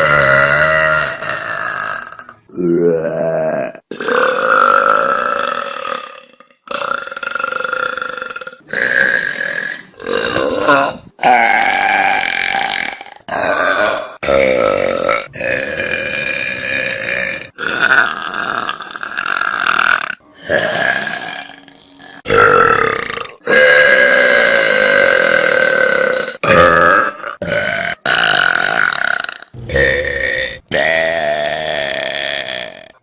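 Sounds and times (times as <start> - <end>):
person burping: 0.0 - 33.0.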